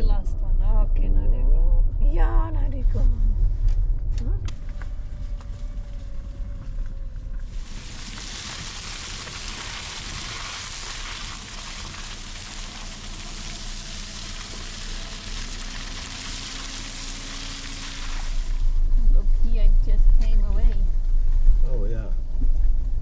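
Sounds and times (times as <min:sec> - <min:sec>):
car driving on wet road: 0:02.5 - 0:23.0
water hissing: 0:07.5 - 0:18.8.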